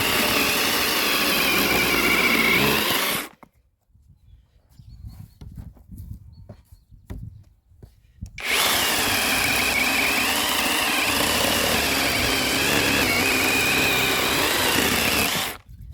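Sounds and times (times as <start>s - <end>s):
electric chainsaw whining: 0.0s - 3.4s, 8.4s - 15.6s.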